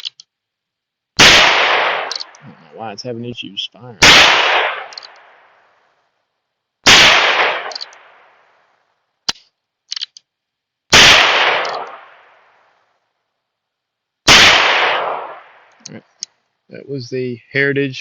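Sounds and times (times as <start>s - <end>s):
metallic clicks: 0.0s - 0.4s, 2.0s - 2.4s, 4.9s - 5.3s, 7.6s - 8.0s, 9.2s - 10.3s
revolver shots with echo: 1.2s - 2.3s, 4.0s - 5.4s, 6.9s - 8.2s, 11.0s - 12.2s, 14.3s - 15.6s.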